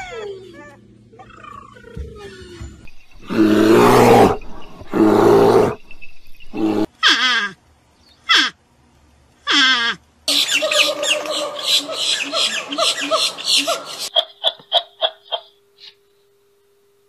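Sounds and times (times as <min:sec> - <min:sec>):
big cat roaring: 0:03.2 - 0:05.9, 0:06.5 - 0:06.9.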